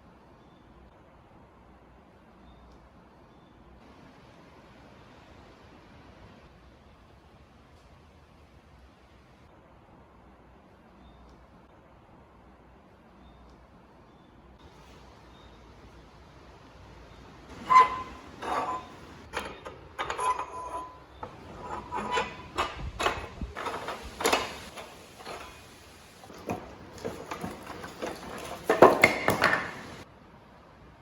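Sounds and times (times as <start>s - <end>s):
metal parts clattering: 17.5s - 30.0s
metallic knocks and clanks: 17.5s - 30.0s.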